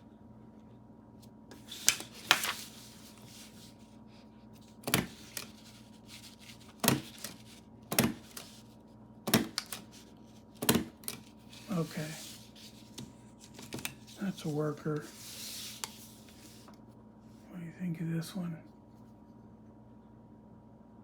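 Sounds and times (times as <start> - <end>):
desk stapler snapping: 9.3 - 9.8.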